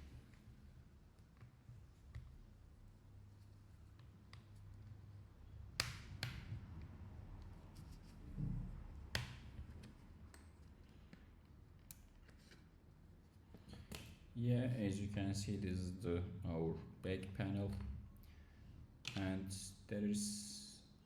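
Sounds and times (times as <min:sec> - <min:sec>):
faint low hum: 0:06.4 - 0:13.6.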